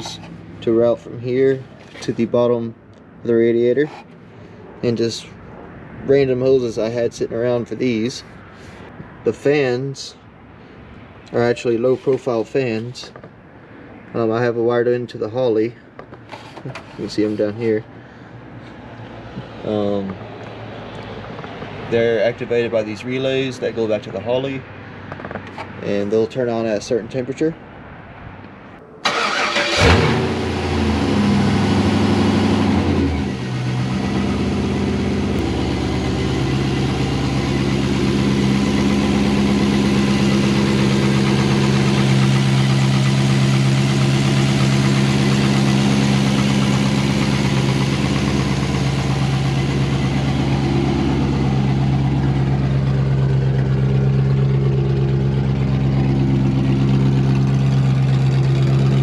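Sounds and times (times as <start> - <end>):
engine starting and idling: 29.0 - 59.0.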